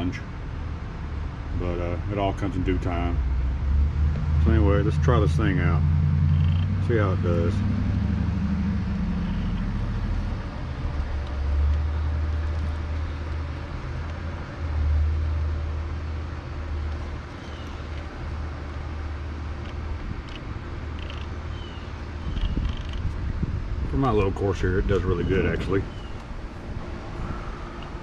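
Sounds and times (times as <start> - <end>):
low rumble: 2.0 - 28.0.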